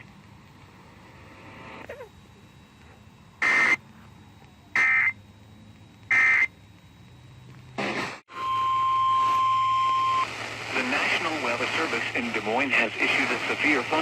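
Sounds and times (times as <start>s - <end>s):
loud steady single-pitch tone: 1.8s - 7.2s, 8.3s - 10.3s
warbling digital data bursts: 4.7s - 6.6s.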